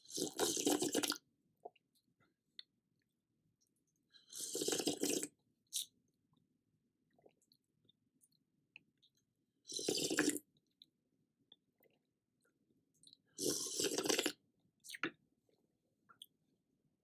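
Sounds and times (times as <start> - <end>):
noisy slurping mouthfuls: 0.0 - 1.2, 4.2 - 5.9, 9.7 - 10.5, 13.4 - 15.0
soft chewing: 16.1 - 16.4.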